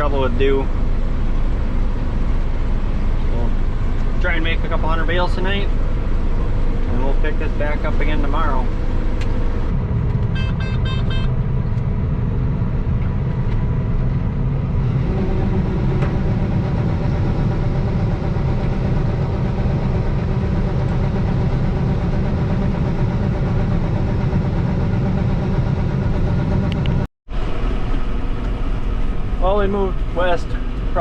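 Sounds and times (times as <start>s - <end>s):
combine harvester running: 0.0s - 31.0s
electronic beeps: 10.4s - 11.3s.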